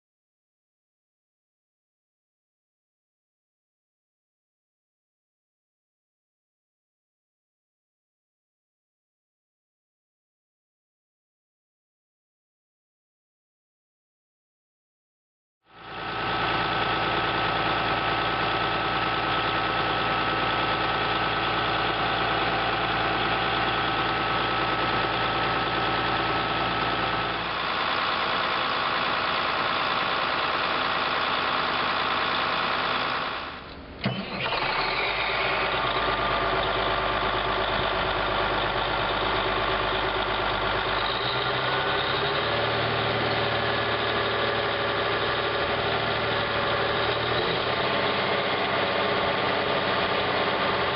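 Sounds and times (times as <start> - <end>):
bulldozer diesel engine running: 15.7 - 50.9.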